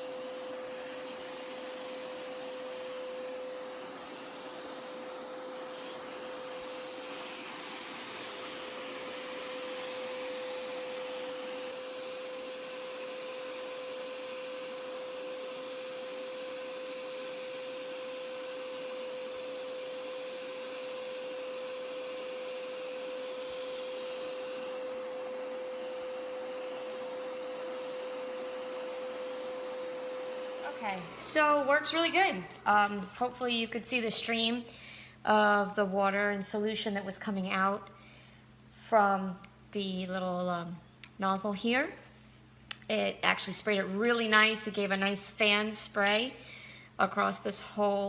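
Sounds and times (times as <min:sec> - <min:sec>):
carpet cleaner motor hum: 0:00.0 - 0:33.5.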